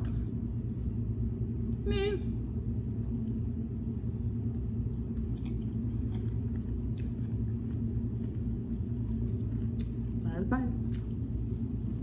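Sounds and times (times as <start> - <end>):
low background rumble: 0.0 - 12.0
person chewing food: 4.5 - 10.2, 10.8 - 12.0.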